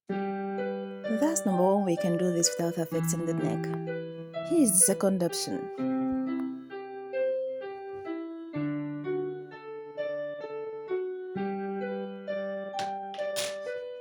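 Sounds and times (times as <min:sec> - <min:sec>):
electric keyboard music: 0:00.1 - 0:14.0.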